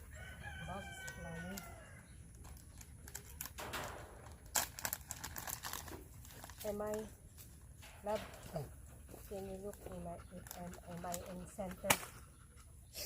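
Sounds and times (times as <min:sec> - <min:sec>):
wire fencing clicks and knocks: 0:03.2 - 0:05.8.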